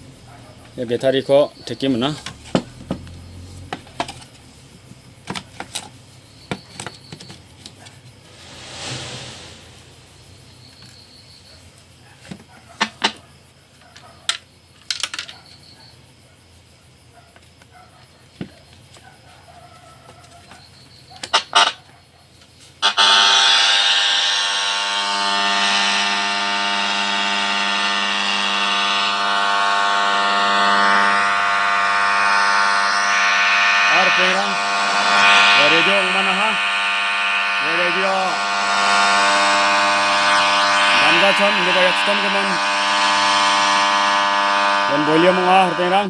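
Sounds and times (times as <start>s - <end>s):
radio speaker humming tone: 22.8s - 46.0s
radio speaker hiss: 22.9s - 46.0s.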